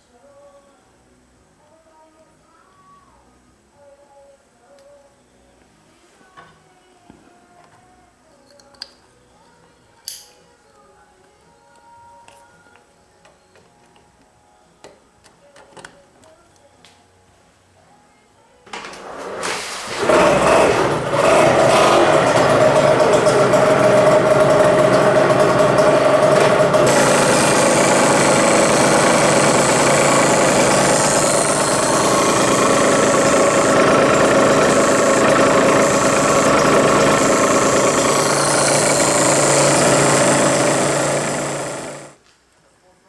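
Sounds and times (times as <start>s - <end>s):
two-stroke engine running: 19.0s - 42.2s.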